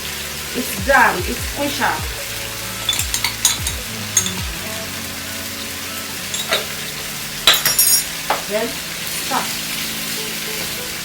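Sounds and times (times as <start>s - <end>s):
sauce sizzling in a pot: 0.0s - 11.0s
spoon clicking against pot: 2.9s - 4.4s.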